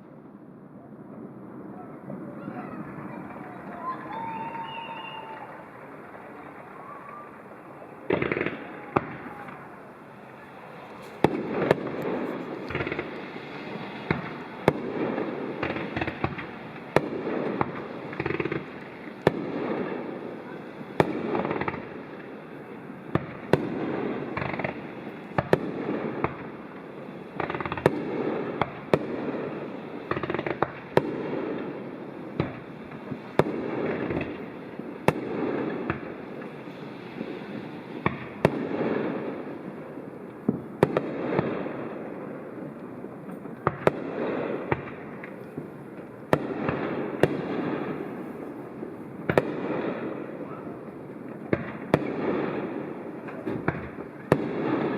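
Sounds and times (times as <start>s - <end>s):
rumble of fireworks booms: 0.0s - 54.9s.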